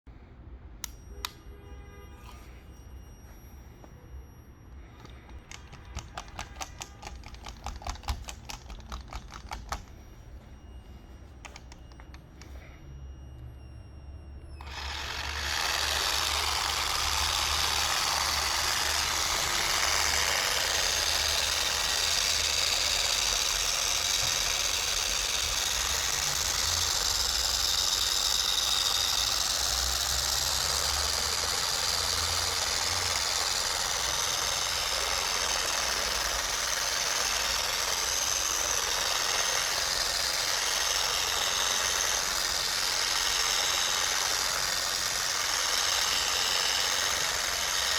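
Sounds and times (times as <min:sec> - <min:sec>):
mini polisher running: 0:05.0 - 0:10.0, 0:14.6 - 0:47.9.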